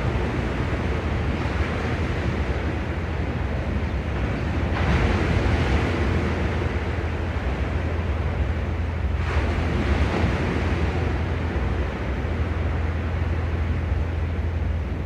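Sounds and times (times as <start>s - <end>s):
sea waves washing onto shore: 0.0s - 15.0s
wind rumble on microphone: 0.0s - 15.0s.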